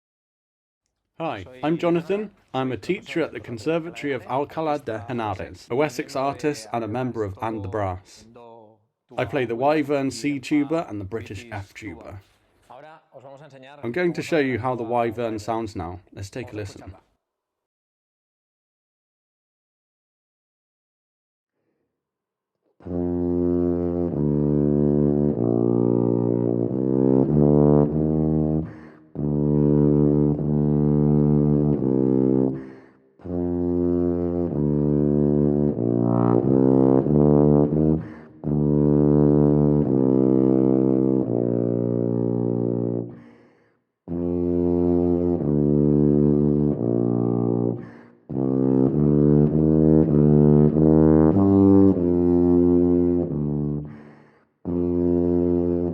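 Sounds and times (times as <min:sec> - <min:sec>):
solo tuba melody: 0:22.8 - 0:43.2, 0:44.0 - 0:54.0, 0:54.6 - 0:55.9.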